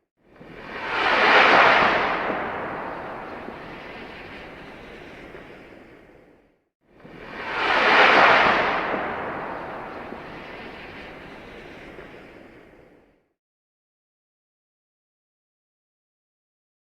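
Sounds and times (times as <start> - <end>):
rocket launch rush: 0.4 - 5.7, 7.2 - 12.6.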